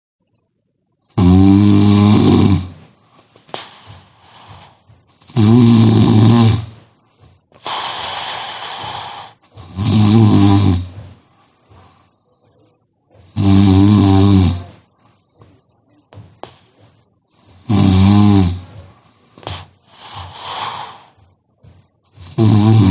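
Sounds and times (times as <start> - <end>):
person snoring loudly: 1.2 - 2.9, 3.5 - 6.8, 7.6 - 11.2, 13.2 - 14.8, 17.4 - 21.2, 22.2 - 22.9
hissing breath: 1.8 - 12.2, 18.6 - 21.3.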